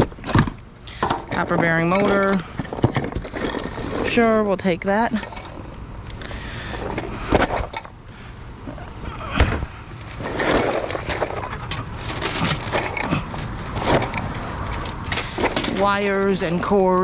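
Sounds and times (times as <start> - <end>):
scrap pieces clattering: 1.0 - 4.4, 10.0 - 16.1.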